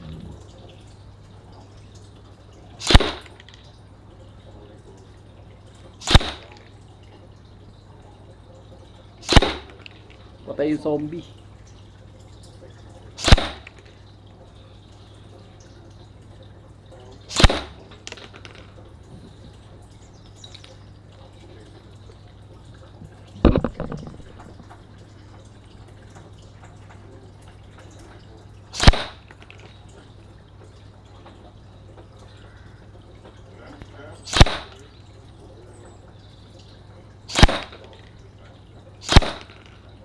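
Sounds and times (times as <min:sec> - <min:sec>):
short rattle: 0:02.6 - 0:03.8, 0:05.7 - 0:06.8, 0:08.4 - 0:14.1, 0:16.9 - 0:25.4, 0:26.1 - 0:30.0, 0:32.2 - 0:35.9, 0:37.3 - 0:40.0
airsoft rifle shots: 0:02.8 - 0:03.5, 0:06.0 - 0:06.6, 0:09.2 - 0:10.1, 0:13.2 - 0:13.9, 0:17.3 - 0:19.3, 0:23.4 - 0:24.8, 0:28.8 - 0:29.7, 0:34.3 - 0:34.9, 0:37.3 - 0:38.1, 0:39.0 - 0:39.8.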